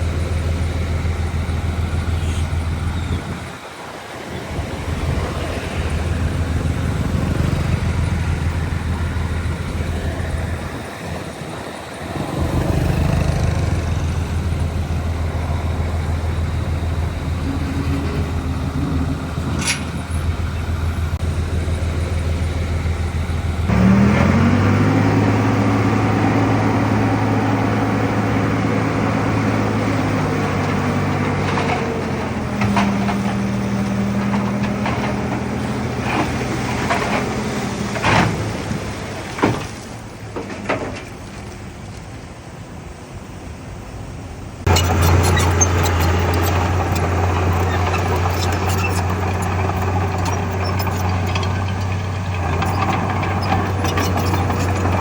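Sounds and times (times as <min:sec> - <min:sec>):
heavy diesel engine running: 0:00.0 - 0:39.6, 0:44.5 - 0:55.0
engine revving: 0:05.0 - 0:10.8, 0:12.2 - 0:21.5, 0:23.6 - 0:38.3, 0:44.7 - 0:55.0.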